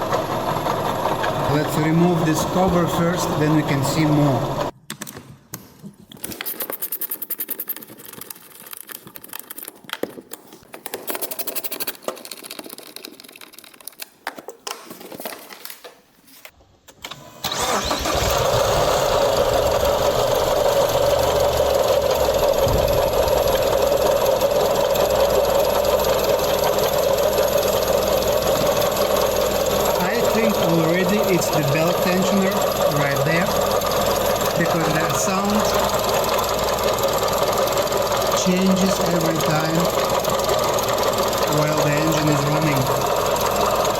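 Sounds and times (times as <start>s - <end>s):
car engine running: 0.0s - 4.7s, 18.2s - 43.9s
plastic cover clicks and rattles: 6.2s - 16.0s.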